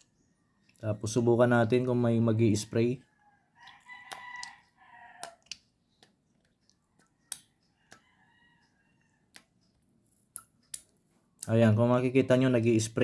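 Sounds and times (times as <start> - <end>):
rooster crowing: 3.1 - 5.4, 7.8 - 9.2.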